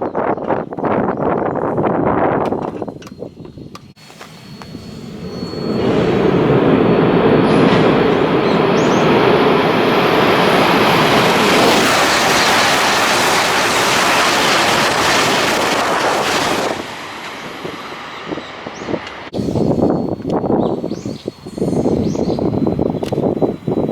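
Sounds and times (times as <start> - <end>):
high-speed train rushing past: 4.0 - 20.2.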